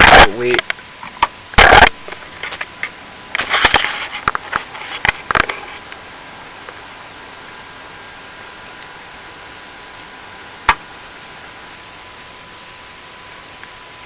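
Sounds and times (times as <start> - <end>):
steady hiss: 0.0 - 14.0
rustling scrape: 3.4 - 5.9.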